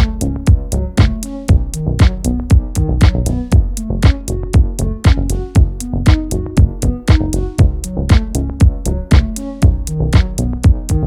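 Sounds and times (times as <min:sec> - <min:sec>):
drum machine kick: 0:00.0 - 0:11.0
stepping bass line: 0:00.0 - 0:11.0.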